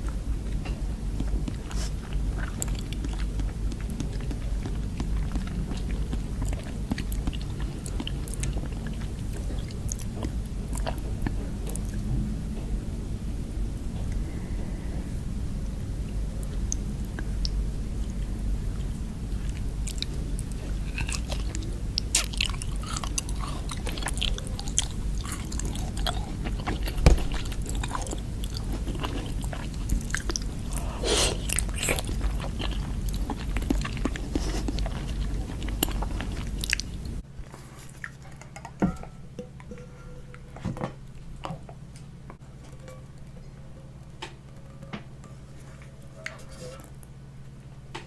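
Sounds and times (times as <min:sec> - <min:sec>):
chewing and crunching: 0:00.0 - 0:12.7, 0:16.1 - 0:38.8
low background hum: 0:00.0 - 0:48.0.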